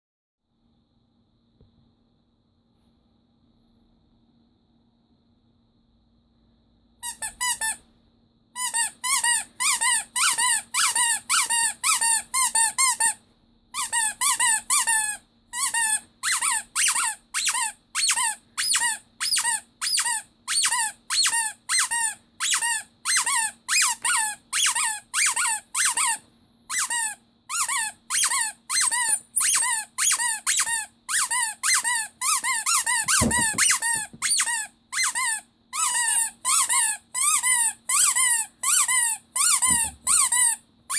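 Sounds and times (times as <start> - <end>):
squeaky toy squeaks: 7.0 - 7.8, 8.6 - 13.2, 13.8 - 40.9.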